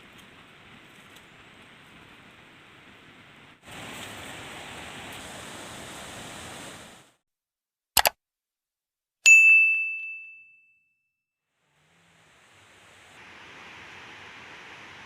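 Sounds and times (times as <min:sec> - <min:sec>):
steady hiss: 0:00.0 - 0:07.2, 0:11.6 - 0:15.0
quick double click: 0:08.0 - 0:08.2
high bell-like ding: 0:09.3 - 0:11.1.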